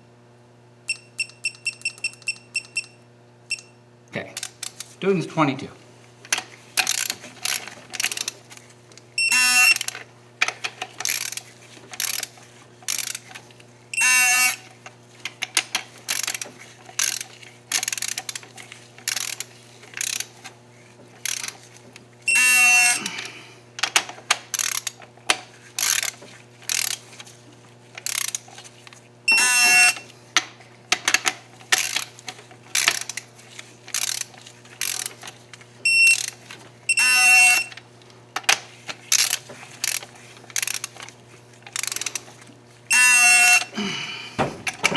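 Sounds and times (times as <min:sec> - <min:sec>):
torque wrench buzzing beep: 0:00.9 - 0:03.8, 0:09.2 - 0:09.8, 0:13.9 - 0:14.6, 0:22.3 - 0:23.1, 0:29.3 - 0:30.1, 0:35.8 - 0:36.3, 0:36.9 - 0:37.8, 0:42.9 - 0:43.8
ratchet clicking: 0:06.8 - 0:08.4, 0:11.0 - 0:13.3, 0:16.1 - 0:18.4, 0:19.1 - 0:20.3, 0:21.2 - 0:21.6, 0:24.5 - 0:25.0, 0:25.8 - 0:27.1, 0:28.0 - 0:28.5, 0:31.8 - 0:32.1, 0:33.9 - 0:35.3, 0:36.0 - 0:36.4, 0:39.1 - 0:41.0, 0:41.7 - 0:42.3.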